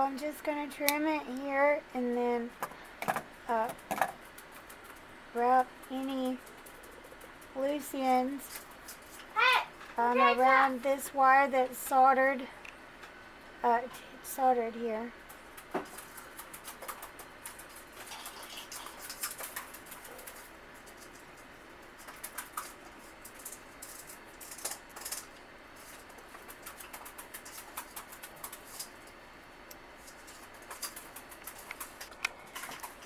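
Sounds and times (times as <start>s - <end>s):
wire being wrapped by hand: 22.0s - 29.2s.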